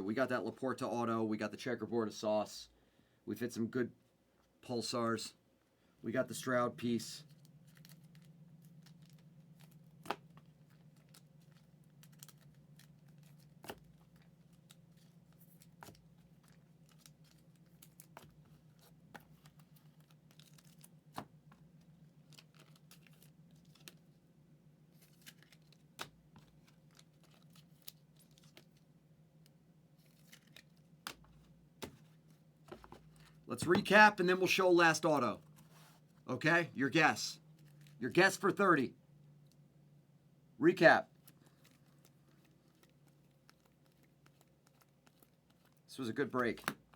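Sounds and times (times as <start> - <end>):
low steady hum: 0.0 - 46.9
trading cards being handled: 7.2 - 24.2, 24.9 - 38.8, 40.7 - 46.9.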